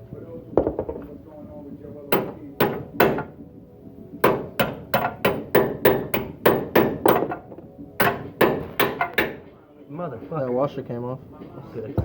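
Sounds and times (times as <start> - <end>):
hammer striking metal: 4.2 - 7.4, 8.0 - 9.4.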